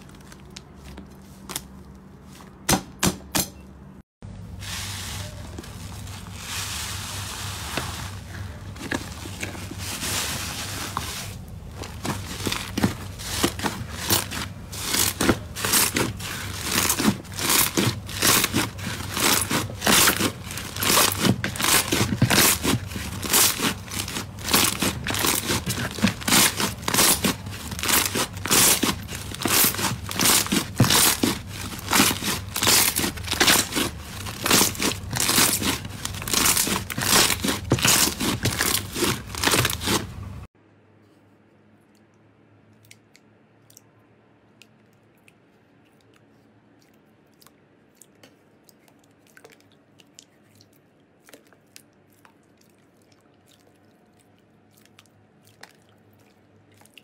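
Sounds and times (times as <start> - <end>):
slime crackling and popping: 12.0 - 40.2.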